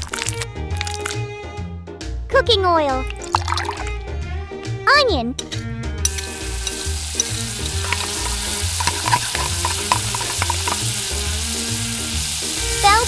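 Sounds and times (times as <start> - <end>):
onion sizzling in oil: 0.0 - 1.2, 5.4 - 13.0.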